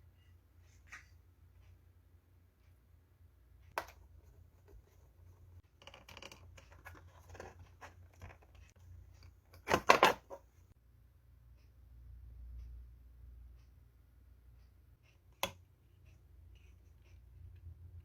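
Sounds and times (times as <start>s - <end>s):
scraping and rustling: 4.2s - 8.8s
plastic and metal clacks: 4.6s - 8.8s.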